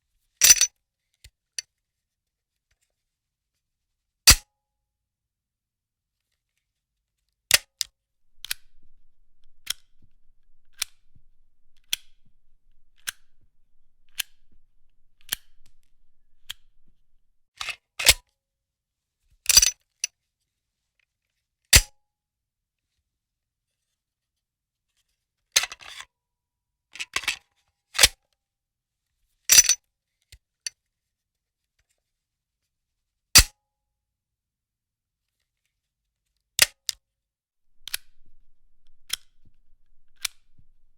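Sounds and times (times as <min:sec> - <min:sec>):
gun reloading clicks and clacks: 0:08.3 - 0:17.3, 0:37.7 - 0:40.9.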